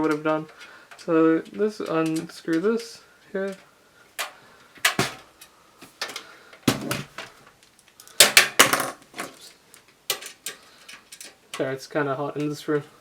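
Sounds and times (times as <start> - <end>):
screws and case panel clattering: 4.2 - 5.2.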